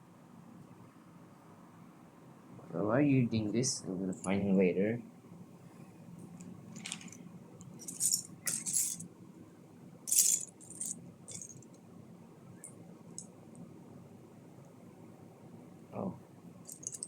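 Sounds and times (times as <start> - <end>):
plastic pieces rattling: 6.8 - 7.2, 7.8 - 9.0, 10.1 - 11.6, 16.7 - 17.0.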